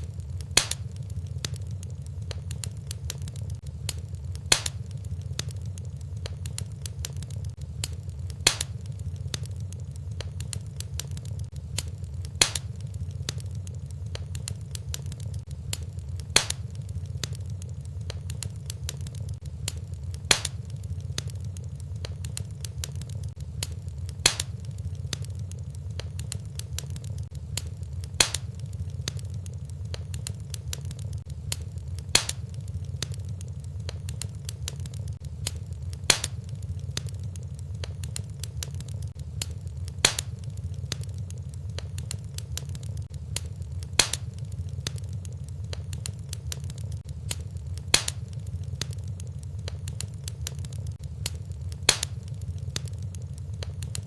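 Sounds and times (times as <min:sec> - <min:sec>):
fire crackling: 0:00.0 - 0:54.0
sharp pop of fire: 0:00.1 - 0:05.6, 0:07.8 - 0:09.6, 0:10.2 - 0:13.5, 0:15.7 - 0:17.4, 0:18.1 - 0:27.0, 0:27.6 - 0:37.1, 0:37.8 - 0:42.7, 0:43.3 - 0:46.0, 0:46.7 - 0:49.0, 0:51.0 - 0:53.0.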